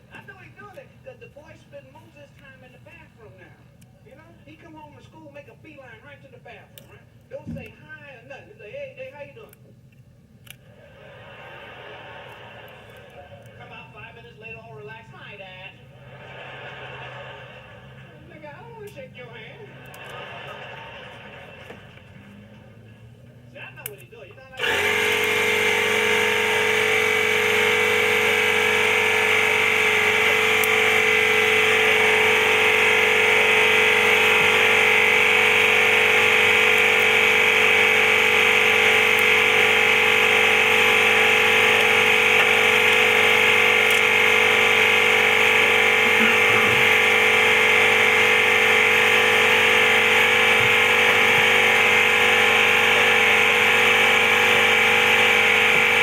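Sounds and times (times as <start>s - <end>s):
electric tool motor whirring: 24.5s - 56.0s.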